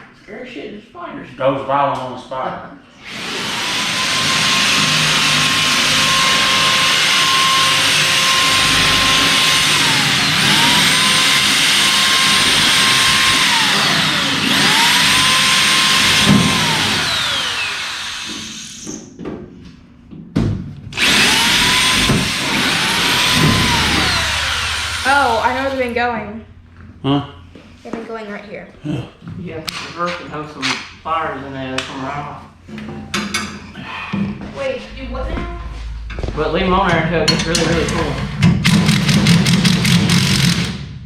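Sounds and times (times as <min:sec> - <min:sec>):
electric drill cutting metal: 0:03.0 - 0:19.0, 0:21.0 - 0:25.8, 0:37.4 - 0:40.8.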